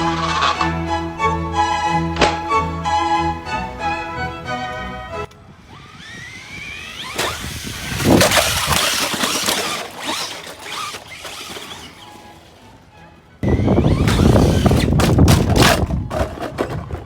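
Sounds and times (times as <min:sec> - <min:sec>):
electric motor whining: 0:05.2 - 0:12.7, 0:13.4 - 0:16.4
scraping and clattering: 0:06.8 - 0:12.7, 0:13.5 - 0:17.0.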